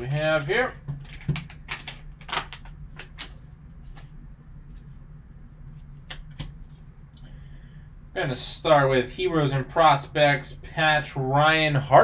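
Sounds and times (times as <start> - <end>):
card packaging clicks and rustles: 0.0 - 4.2
steady low hum: 0.0 - 12.0.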